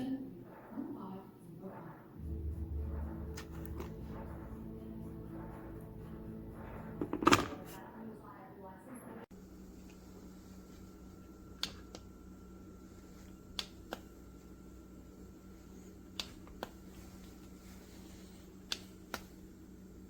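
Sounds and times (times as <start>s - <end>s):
low hum: 0.0s - 8.4s, 9.3s - 20.0s
coffee percolator popping: 7.0s - 7.7s.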